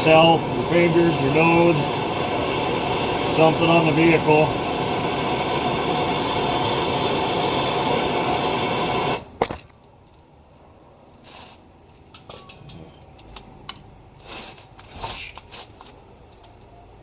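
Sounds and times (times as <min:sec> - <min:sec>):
torch shut-off click: 0:00.0 - 0:09.3
gas torch flame hissing: 0:00.0 - 0:09.4
clicks and knocks of tools: 0:12.0 - 0:13.9.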